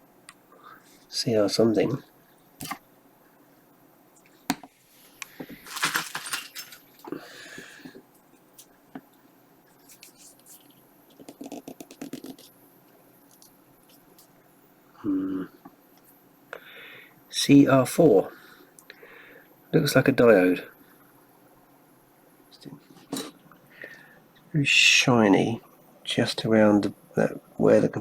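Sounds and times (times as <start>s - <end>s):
small hard parts clinking: 5.6s - 7.1s.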